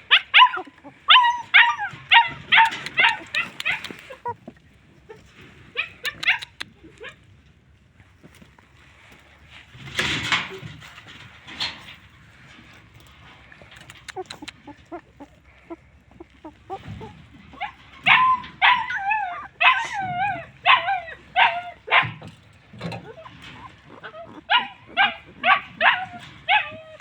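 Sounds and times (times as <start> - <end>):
dogs whining and whimpering: 0.0 - 4.5, 14.0 - 27.0.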